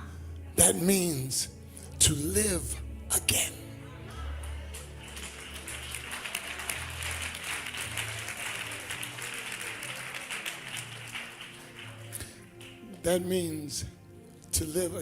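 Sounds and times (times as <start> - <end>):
low sustained music notes: 0.0 - 15.0
congregation applauding: 4.4 - 13.5.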